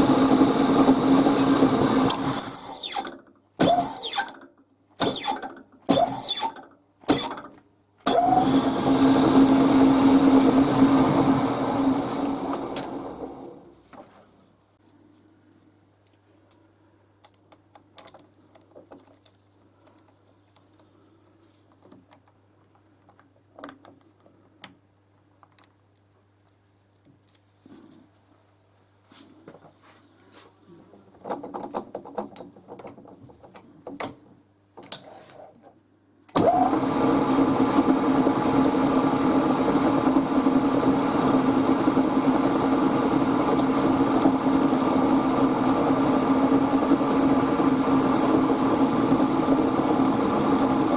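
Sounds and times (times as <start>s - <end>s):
machine motor humming: 8.1s - 13.6s, 36.4s - 50.9s
small parts clicking and knocking: 17.2s - 27.5s.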